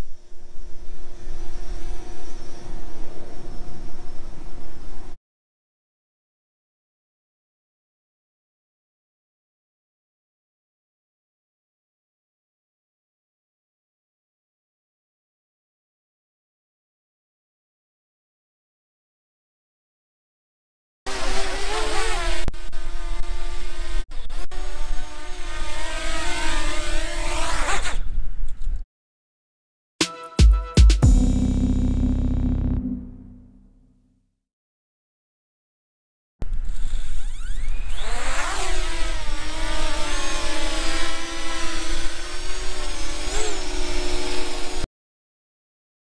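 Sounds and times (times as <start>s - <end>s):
low rumble: 31.0s - 33.6s.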